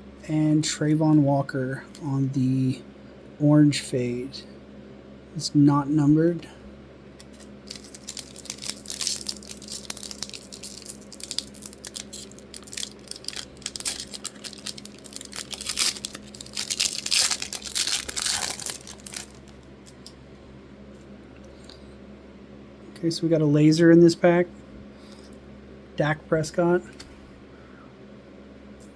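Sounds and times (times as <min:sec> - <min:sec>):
plastic wrapper tearing and crinkling: 0:07.2 - 0:20.1.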